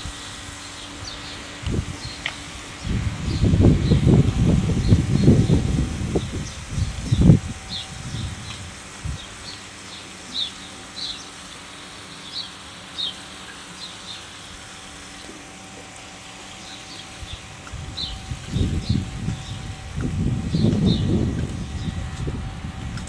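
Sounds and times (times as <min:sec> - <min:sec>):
small birds chirping: 0:00.6 - 0:14.5, 0:16.1 - 0:22.5
wind rumble on microphone: 0:01.0 - 0:09.3, 0:17.2 - 0:23.0.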